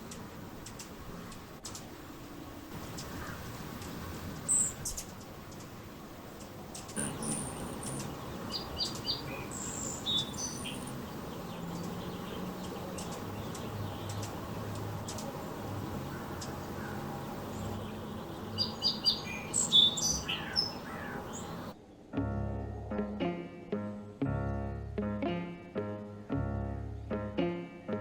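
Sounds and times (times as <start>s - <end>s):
small birds chirping: 0.0s - 22.2s.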